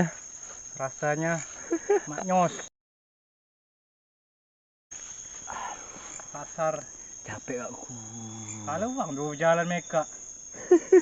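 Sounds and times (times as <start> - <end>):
night insects hissing: 0.0 - 2.7, 4.9 - 11.0.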